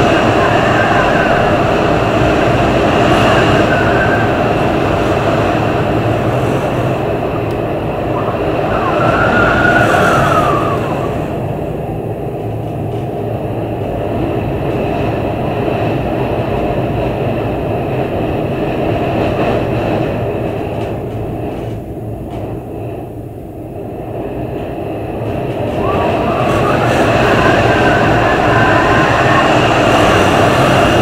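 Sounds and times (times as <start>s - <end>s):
heavy wind gusting: 0.0s - 31.0s
high squeal: 3.0s - 4.6s, 8.0s - 11.4s, 25.8s - 30.6s.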